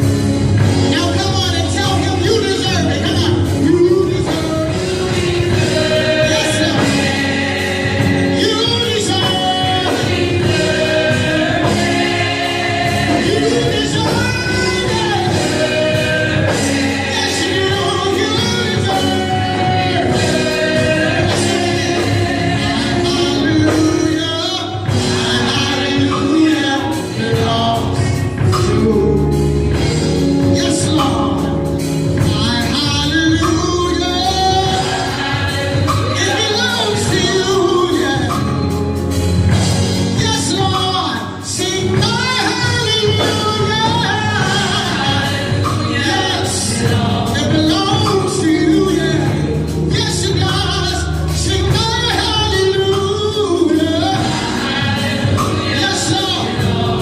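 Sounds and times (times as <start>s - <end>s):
choir singing gospel: 0.0s - 57.0s
gospel instruments: 0.0s - 57.0s.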